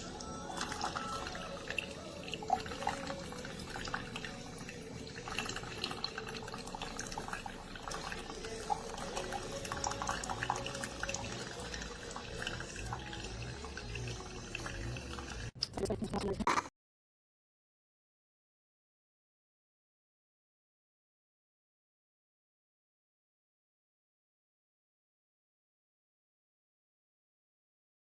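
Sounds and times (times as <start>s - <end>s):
water trickling and dripping: 0.0s - 15.6s.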